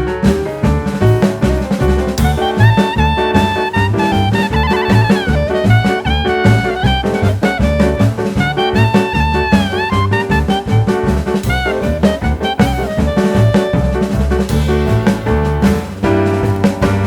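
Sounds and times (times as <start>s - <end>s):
upbeat jazz music: 0.0s - 17.0s.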